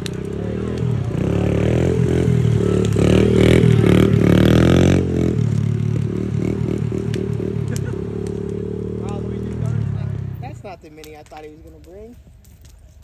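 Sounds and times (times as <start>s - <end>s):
car engine revving: 0.0s - 10.7s.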